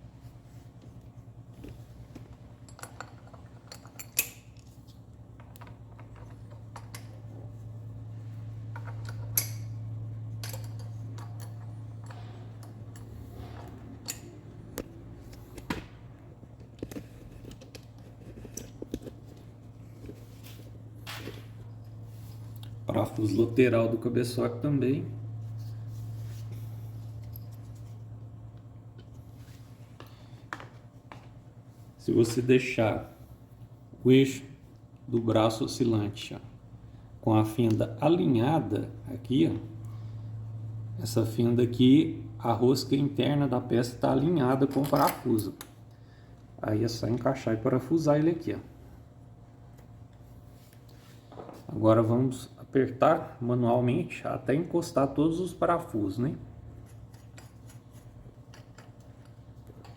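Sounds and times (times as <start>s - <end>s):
steady low hum: 0.0s - 59.9s
small steel parts clinking: 10.4s - 13.2s.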